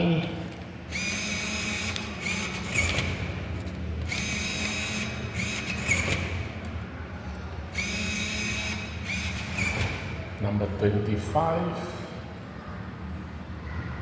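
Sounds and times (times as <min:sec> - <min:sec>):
banknote acceptor motor whirring: 0:00.9 - 0:06.8, 0:07.7 - 0:10.4.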